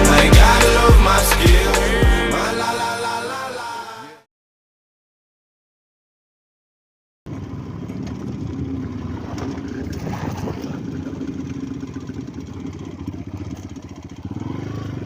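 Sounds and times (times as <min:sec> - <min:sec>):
engine running: 0:07.3 - 0:15.0.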